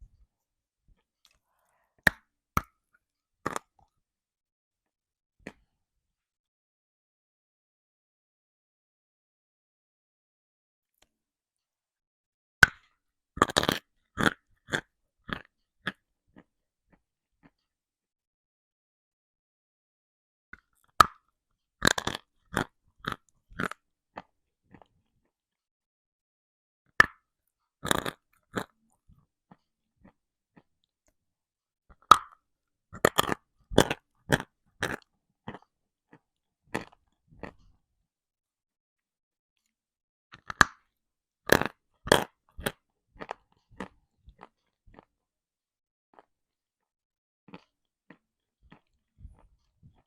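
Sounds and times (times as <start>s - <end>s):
biting with a sharp crack: 12.6s - 16.5s, 20.6s - 24.9s, 27.8s - 28.8s, 33.0s - 37.7s, 40.3s - 45.1s
crunchy chewing: 13.4s - 17.6s, 20.6s - 25.0s, 27.8s - 30.9s, 31.9s - 37.8s, 40.3s - 45.1s, 47.5s - 50.0s.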